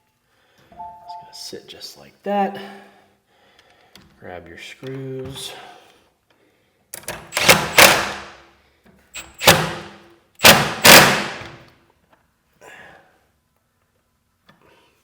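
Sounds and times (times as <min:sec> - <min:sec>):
impact wrench hammering screws: 0:07.2 - 0:08.3, 0:09.2 - 0:11.6.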